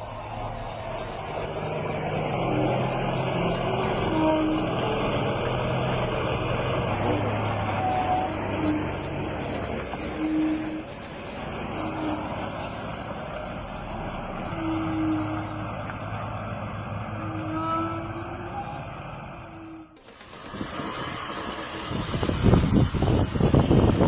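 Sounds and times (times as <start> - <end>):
truck engine running: 0.0 - 17.2, 20.0 - 24.0
short squeaking tones: 6.8 - 20.3.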